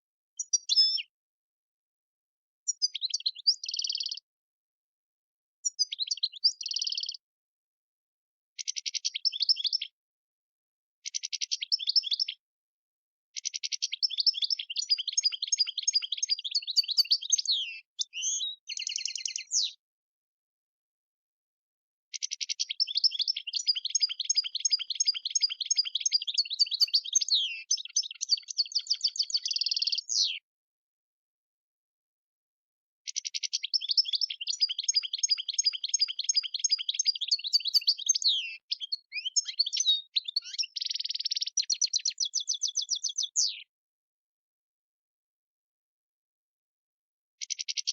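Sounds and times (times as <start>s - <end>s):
goldfinch twittering song: 0.4s - 1.1s, 2.7s - 4.2s, 5.6s - 7.2s, 8.6s - 10.0s, 11.0s - 12.4s, 13.4s - 19.8s, 22.1s - 30.4s, 33.1s - 43.7s, 47.4s - 47.9s.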